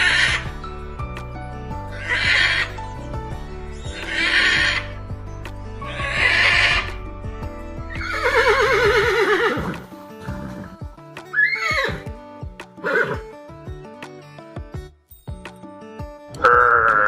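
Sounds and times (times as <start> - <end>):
horse whinnying: 0.0 - 0.5, 2.0 - 2.7, 4.0 - 4.9, 5.9 - 7.0, 7.9 - 12.1, 12.8 - 13.3, 16.4 - 17.0
background music: 0.0 - 17.0.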